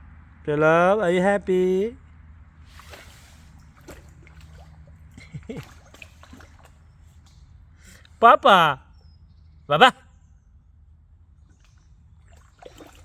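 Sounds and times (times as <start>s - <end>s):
low steady rumble: 0.0s - 13.0s
rainwater splashing and trickling: 2.7s - 7.4s, 11.5s - 13.0s.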